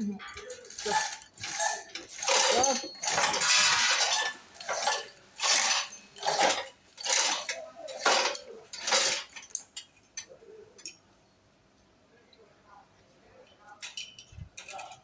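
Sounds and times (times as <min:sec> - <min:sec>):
metal hand tool rasping: 0:00.4 - 0:09.3.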